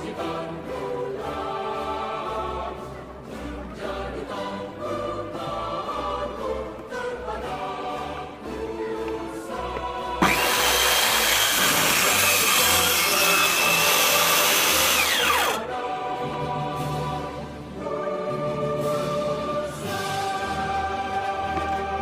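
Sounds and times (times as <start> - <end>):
background music: 0.0 - 22.0
electric power tool whining: 10.2 - 15.6.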